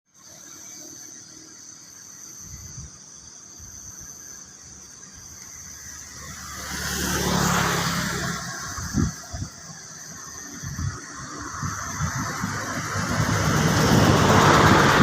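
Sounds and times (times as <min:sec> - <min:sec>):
high-pitched insect drone: 0:00.1 - 0:15.0
vehicle passing by: 0:05.9 - 0:09.6, 0:10.2 - 0:15.0.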